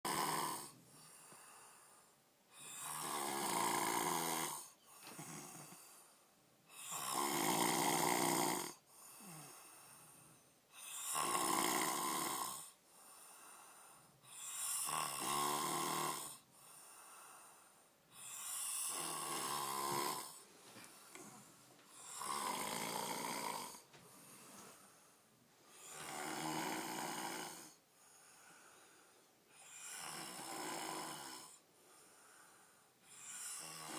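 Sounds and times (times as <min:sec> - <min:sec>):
man snoring: 0:00.1 - 0:00.8, 0:02.6 - 0:05.9, 0:06.8 - 0:09.6, 0:10.8 - 0:12.8, 0:14.3 - 0:16.5, 0:18.2 - 0:20.4, 0:21.1 - 0:23.9, 0:25.8 - 0:27.8, 0:29.6 - 0:31.6, 0:33.1 - 0:33.9.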